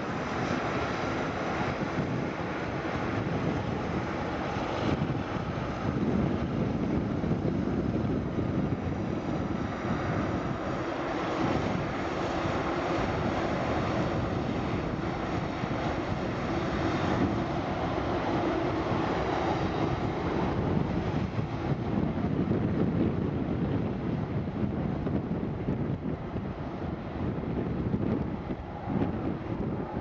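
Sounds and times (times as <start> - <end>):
jet engines roaring steadily: 0.0 - 30.0.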